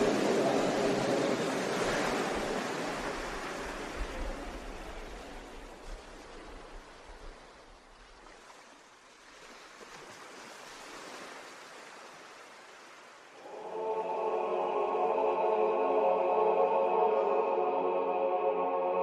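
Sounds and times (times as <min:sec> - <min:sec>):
choir chanting held notes: 0:13.4 - 0:19.0.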